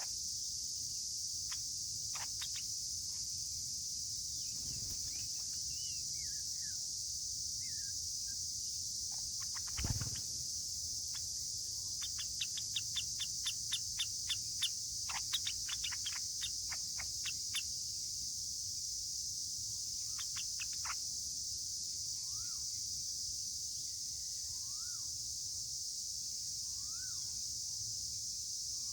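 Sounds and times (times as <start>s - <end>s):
high insect drone: 0.0s - 28.9s
birds calling: 1.5s - 2.7s, 9.1s - 10.5s, 11.1s - 17.7s, 20.0s - 21.0s
whistled bird notes: 4.4s - 6.9s.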